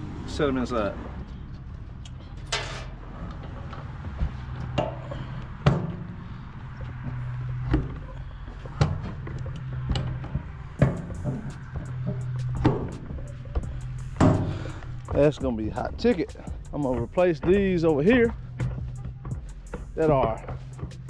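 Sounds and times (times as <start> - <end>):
steady low hum: 1.3 - 21.0
toolbox knocks and thunks: 14.2 - 15.3.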